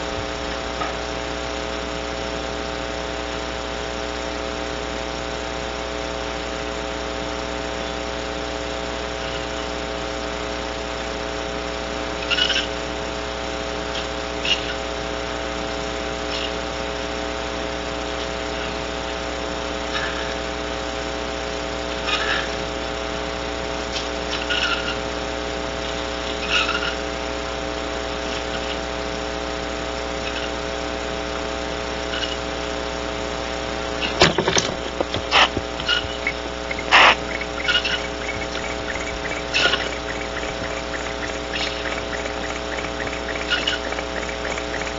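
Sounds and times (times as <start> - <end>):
steady electrical hum: 0.0 - 44.9
faint chirps: 28.1 - 29.0, 30.1 - 30.7, 31.9 - 32.6, 35.3 - 44.9
sharp clicks and knocks: 34.1 - 44.9.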